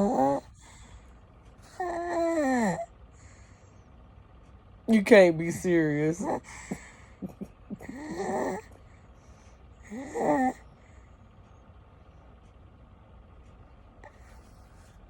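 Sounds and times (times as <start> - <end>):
baby snoring: 0.0 - 0.6, 1.7 - 2.9, 5.6 - 8.8, 9.8 - 10.6
baby breathing quietly: 6.2 - 10.1.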